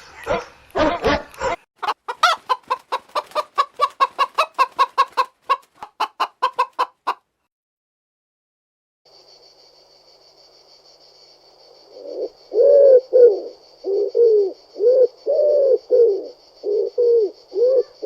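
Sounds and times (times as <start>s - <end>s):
hen clucking: 0.0s - 7.3s
dog barking: 0.2s - 1.6s.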